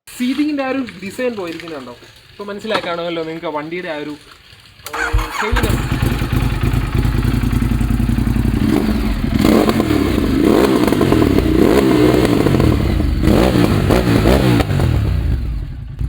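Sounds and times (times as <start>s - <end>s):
motorcycle engine idling: 1.6s - 16.0s
motorcycle engine revving: 4.8s - 16.0s.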